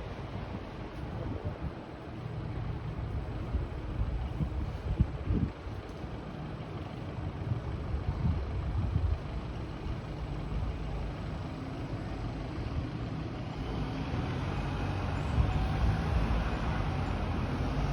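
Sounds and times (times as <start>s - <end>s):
wind rumbling on microphone: 0.0s - 2.1s, 2.8s - 6.2s, 7.3s - 11.0s
large vehicle engine running: 0.0s - 17.9s
street traffic: 0.0s - 17.9s.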